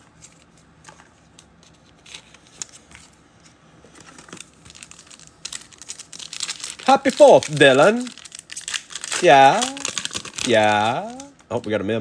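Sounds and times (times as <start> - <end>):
cards and wrapper rustling: 3.9 - 11.5
wrapper being torn open: 4.3 - 11.3.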